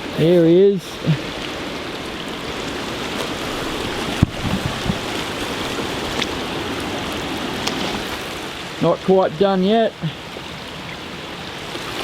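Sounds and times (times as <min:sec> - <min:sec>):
water rushing: 0:00.0 - 0:12.0
soft knocks: 0:03.9 - 0:05.3.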